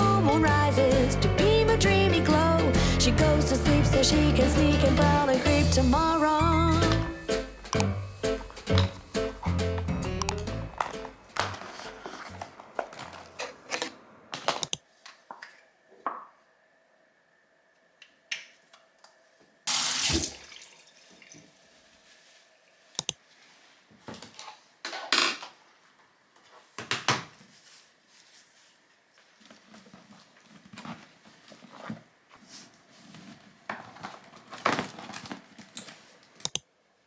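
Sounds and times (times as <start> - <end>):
dishes clinking and knocking: 7.7 - 9.9
tap water running: 19.7 - 21.5.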